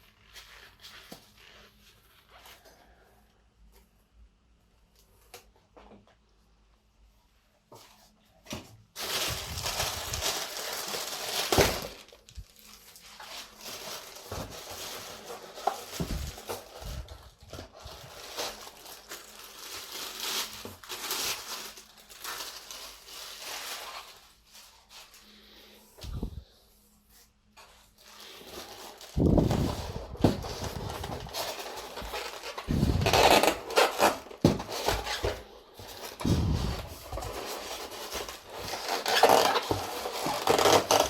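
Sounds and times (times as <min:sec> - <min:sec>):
plastic film crinkling: 0:08.9 - 0:25.4, 0:27.6 - 0:41.0.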